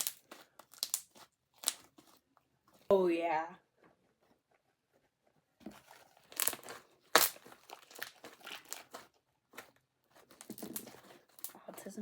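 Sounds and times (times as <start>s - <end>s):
slime crackling and popping: 0.0s - 2.1s, 6.2s - 11.6s.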